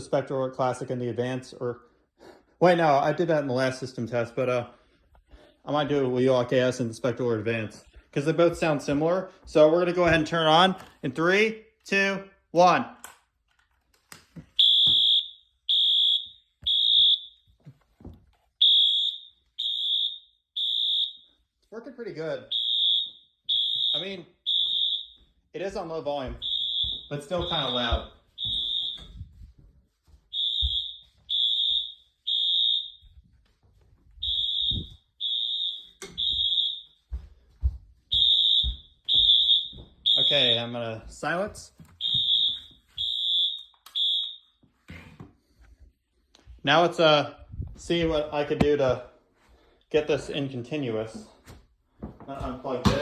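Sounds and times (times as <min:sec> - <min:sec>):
fire alarm horn blasts: 0:14.6 - 0:17.5, 0:18.6 - 0:21.4, 0:22.4 - 0:25.4, 0:26.3 - 0:29.3, 0:30.3 - 0:33.2, 0:34.2 - 0:37.1, 0:38.1 - 0:40.8, 0:42.0 - 0:44.6.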